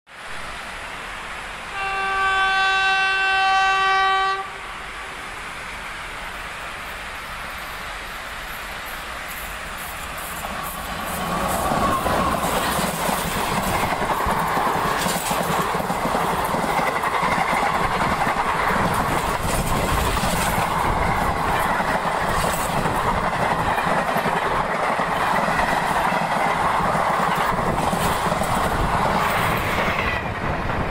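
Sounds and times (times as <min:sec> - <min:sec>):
train rushing past: 0:00.1 - 0:30.9
train horn blast: 0:01.7 - 0:05.2.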